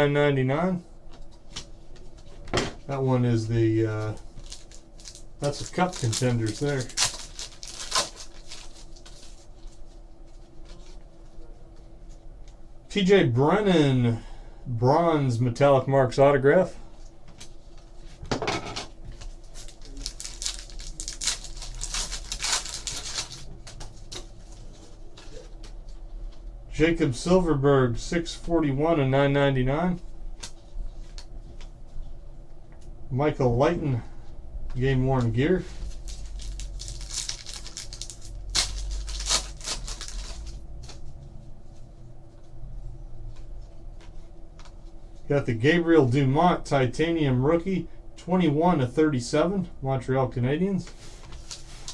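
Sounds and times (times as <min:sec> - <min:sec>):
trading cards rustling and flicking: 0:04.1 - 0:09.4, 0:19.1 - 0:25.7, 0:35.8 - 0:41.0
wrapper tearing: 0:04.4 - 0:09.4, 0:19.5 - 0:23.5, 0:35.9 - 0:41.0, 0:51.3 - 0:51.9.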